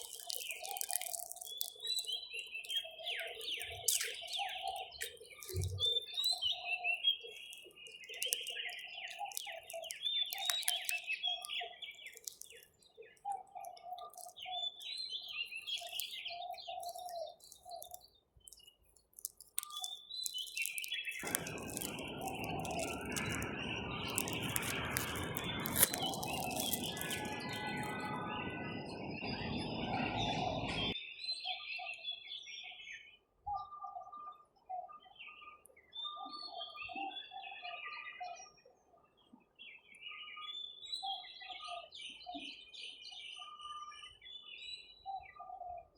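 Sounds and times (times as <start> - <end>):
birds chirping and calling: 0.0 - 18.7, 19.7 - 31.0.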